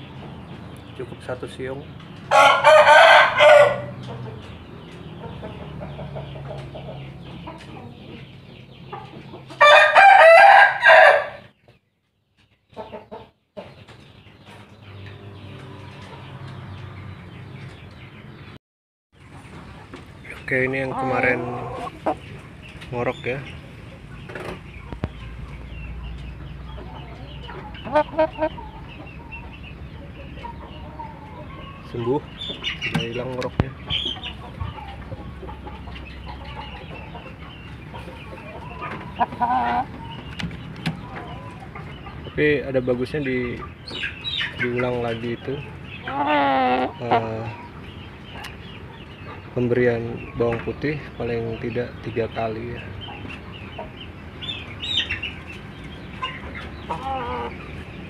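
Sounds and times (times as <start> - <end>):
chicken calls: 0.0 - 18.6, 19.2 - 58.0
rooster crowing: 2.3 - 4.0, 9.6 - 11.5.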